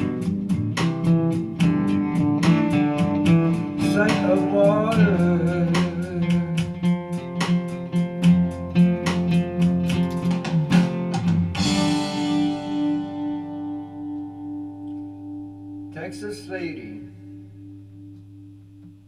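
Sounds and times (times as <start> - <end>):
acoustic guitar strumming: 0.0 - 19.0.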